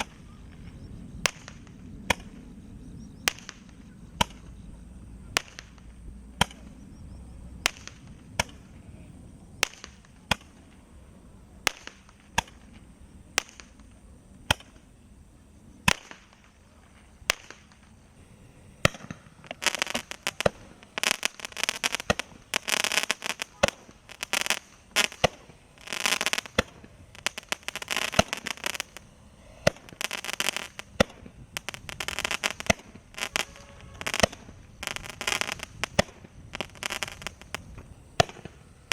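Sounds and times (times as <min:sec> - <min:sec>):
firework bangs: 0:00.0 - 0:08.9, 0:09.5 - 0:15.0, 0:15.8 - 0:38.9
firework crackling: 0:00.0 - 0:38.9.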